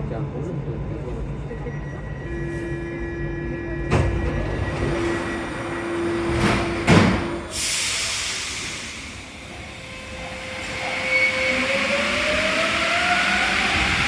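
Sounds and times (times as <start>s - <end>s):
sudden hiss: 7.5s - 9.4s.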